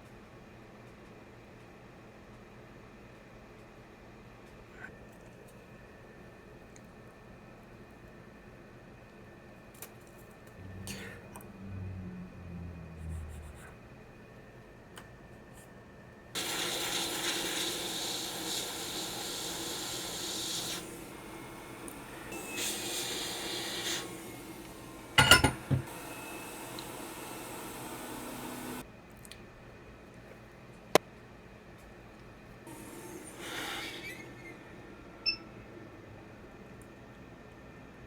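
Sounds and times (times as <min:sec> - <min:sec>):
hot-air rework station hissing: 0:16.4 - 0:28.8, 0:32.7 - 0:35.2.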